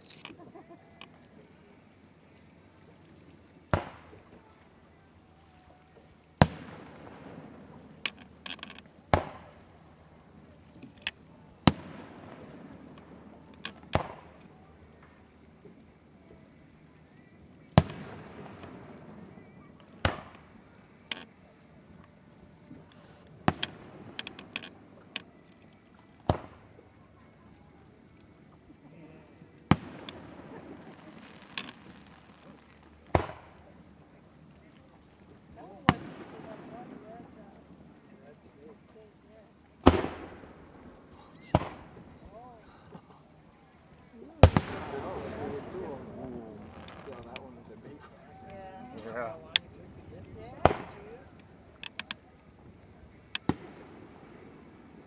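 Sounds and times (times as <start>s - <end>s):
fireworks booming: 3.7s - 4.5s, 6.4s - 9.8s, 11.0s - 14.4s, 17.7s - 21.4s, 22.7s - 25.3s, 28.9s - 33.8s, 35.5s - 38.2s, 39.8s - 43.2s, 44.3s - 55.0s.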